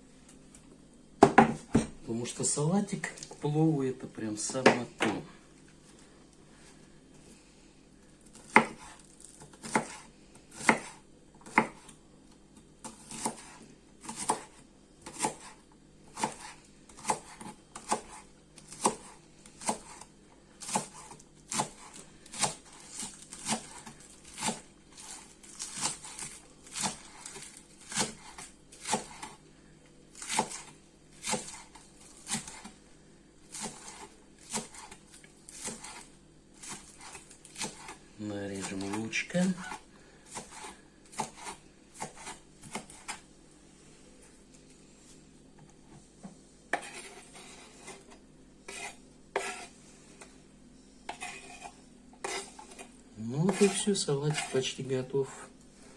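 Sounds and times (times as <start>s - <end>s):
knife chopping on cutting board: 1.2s - 1.9s, 8.4s - 11.9s, 12.8s - 29.4s, 30.2s - 32.7s, 33.5s - 38.0s, 38.6s - 43.2s, 46.7s - 48.1s, 48.7s - 49.7s, 51.1s - 54.6s.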